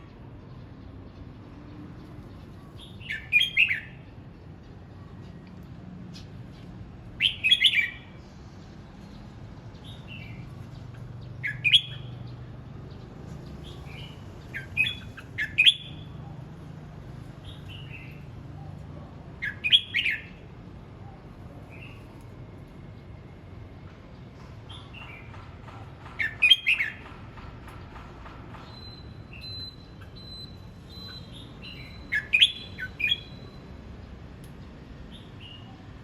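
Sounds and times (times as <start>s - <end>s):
bird singing: 0.0s - 5.5s, 7.2s - 16.3s, 17.4s - 20.4s, 24.7s - 36.0s.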